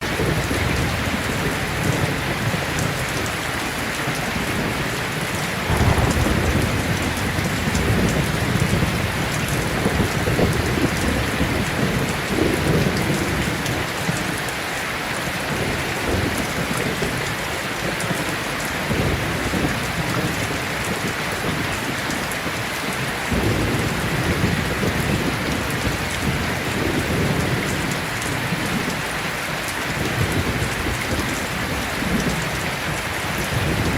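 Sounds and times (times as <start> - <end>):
heavy rain falling: 0.0 - 33.9
low rumble: 5.7 - 9.3.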